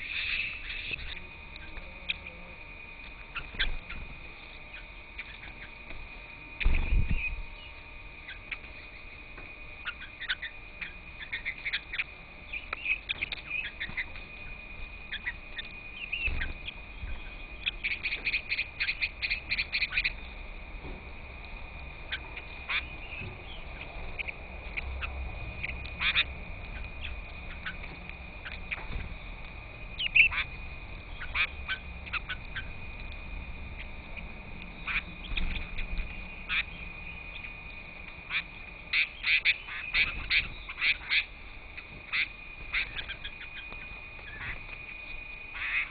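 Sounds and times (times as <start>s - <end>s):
birds giving harsh calls: 0.0s - 20.5s, 21.8s - 45.9s.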